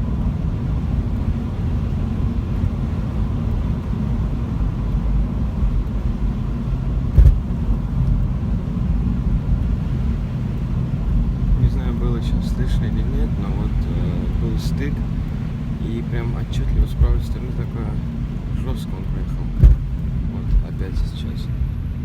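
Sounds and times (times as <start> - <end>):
car road rumble: 0.0 - 22.0
suspension knock: 5.9 - 8.2, 16.6 - 18.6, 19.5 - 20.6.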